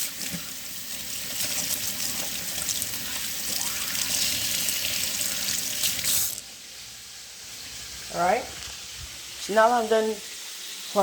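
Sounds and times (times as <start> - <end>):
hands being washed: 0.0 - 6.4
tap water running: 0.0 - 11.0.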